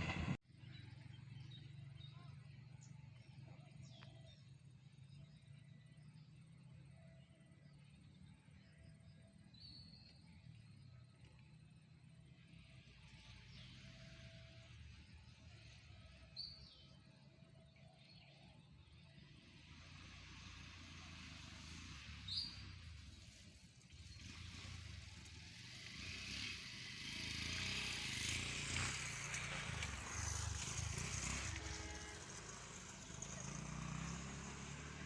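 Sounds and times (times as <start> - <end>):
vehicle rumble and hiss: 0.0 - 0.4, 19.0 - 35.0.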